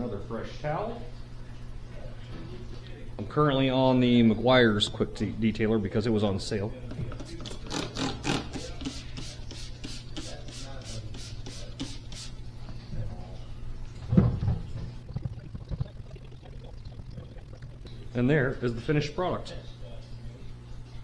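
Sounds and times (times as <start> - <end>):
steady low hum: 0.0 - 21.0
spray bottle hissing: 8.0 - 12.5.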